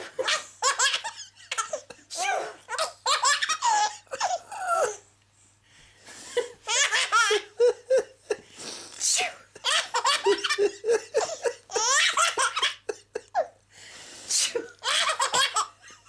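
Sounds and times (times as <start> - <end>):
baby laughing: 0.0 - 5.0, 6.6 - 8.1, 9.6 - 13.6, 14.7 - 16.0.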